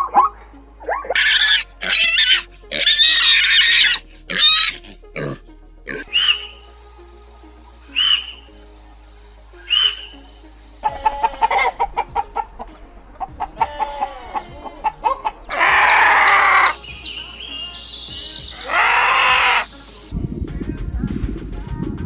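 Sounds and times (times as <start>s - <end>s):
rooster crowing: 10.8s - 16.8s, 18.6s - 19.7s
chickens clucking: 10.8s - 20.2s.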